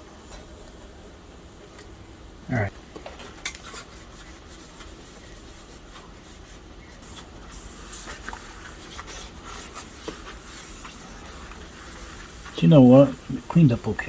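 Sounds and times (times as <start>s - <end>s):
low steady hum: 0.0s - 14.0s
faint rubbing and handling: 3.3s - 14.0s.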